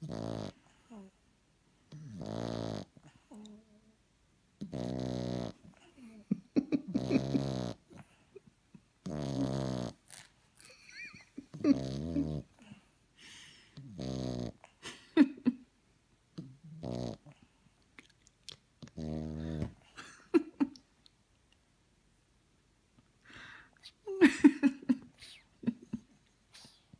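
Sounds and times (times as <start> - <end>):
puppy snoring: 0.0 - 1.2, 1.9 - 4.0, 4.6 - 8.2, 9.0 - 10.8, 11.5 - 12.9, 13.8 - 14.8, 16.4 - 17.6, 18.8 - 19.9.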